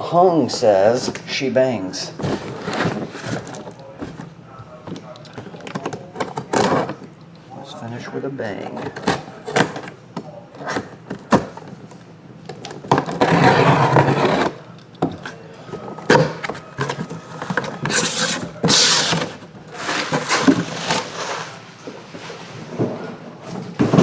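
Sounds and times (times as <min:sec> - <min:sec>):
cardboard scraping and ripping: 0:02.2 - 0:04.2, 0:12.9 - 0:14.6, 0:16.1 - 0:22.6.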